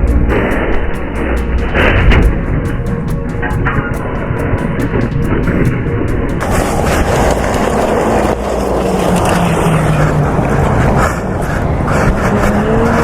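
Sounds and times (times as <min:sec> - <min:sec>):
loud wind roar: 0:00.0 - 0:13.0
motorcycle engine: 0:05.0 - 0:11.6.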